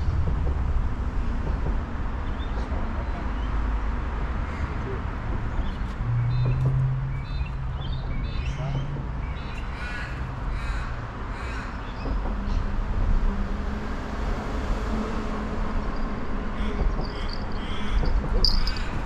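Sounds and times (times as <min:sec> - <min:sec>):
steady low rumble: 0:00.0 - 0:03.3
crow cawing: 0:09.7 - 0:11.9, 0:16.6 - 0:19.0
high bird chirps: 0:17.0 - 0:19.0.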